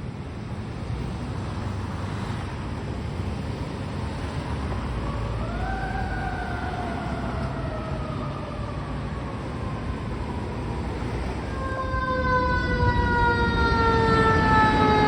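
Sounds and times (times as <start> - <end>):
fire engine rumble: 0.0 - 15.0
siren rising and winding down: 5.1 - 10.4, 11.5 - 15.0.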